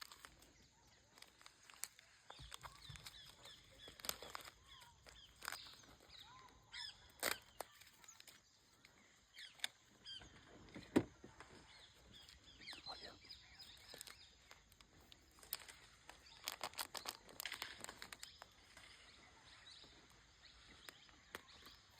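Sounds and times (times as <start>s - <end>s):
birds chirping and calling: 0.0s - 21.9s.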